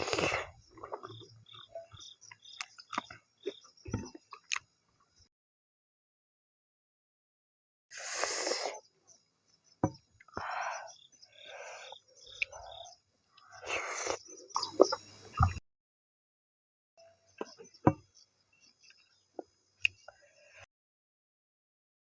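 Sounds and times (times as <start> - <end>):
slurping and sucking breaths: 0.0 - 1.2, 7.9 - 8.8, 11.4 - 12.7, 13.4 - 15.0.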